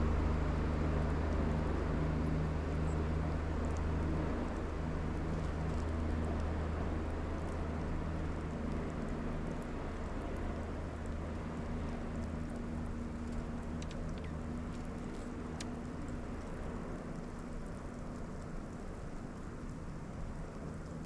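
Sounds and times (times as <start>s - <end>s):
low mechanical drone: 0.0s - 21.0s
faint high ticks: 7.4s - 21.0s.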